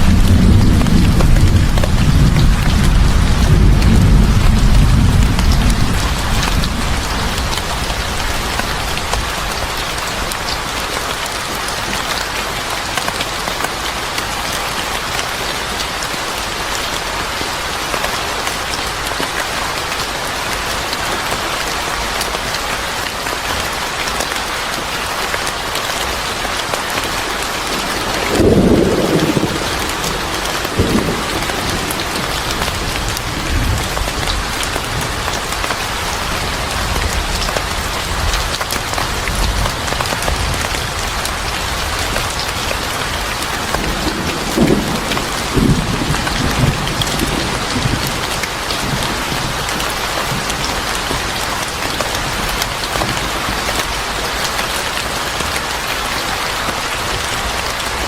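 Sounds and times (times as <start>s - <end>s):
low rumble of thunder: 0.0s - 9.4s, 27.7s - 35.2s, 43.6s - 51.4s
steady rain falling: 0.0s - 58.0s.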